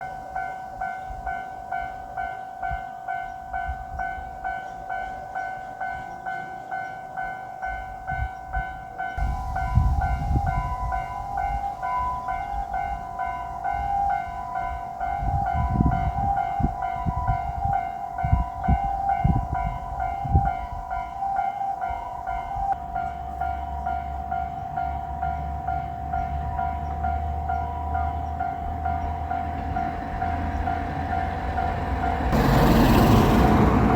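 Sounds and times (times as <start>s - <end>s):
level crossing bell ringing: 0.0s - 33.3s
diesel railcar rumbling past: 0.0s - 33.9s
low engine hum: 23.1s - 33.9s.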